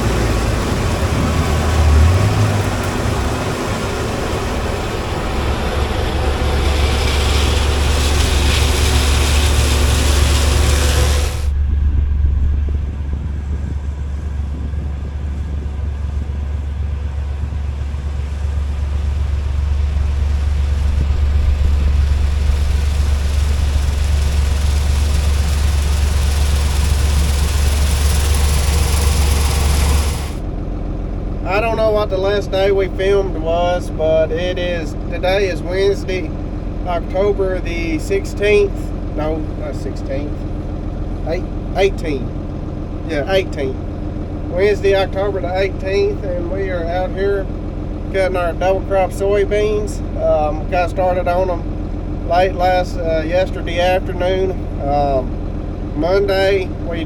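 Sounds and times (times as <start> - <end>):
combine harvester engine drone: 0.0 - 57.0
high hissing: 22.1 - 30.4.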